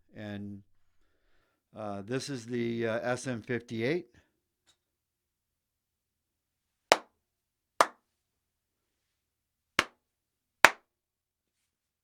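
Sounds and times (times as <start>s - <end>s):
sharp hand claps: 6.9s - 7.1s, 7.8s - 8.0s, 10.6s - 10.9s.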